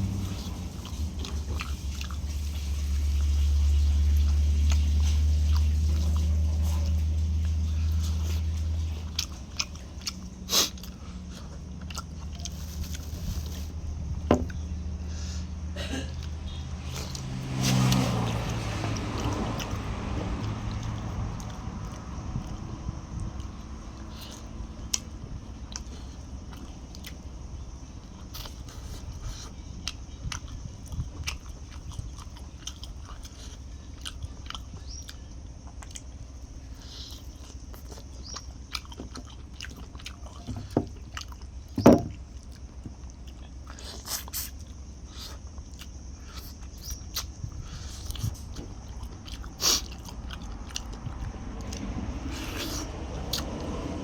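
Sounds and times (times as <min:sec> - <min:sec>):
person chewing chicken: 0:00.0 - 0:54.0
low thump: 0:14.3 - 0:14.6, 0:41.8 - 0:42.2.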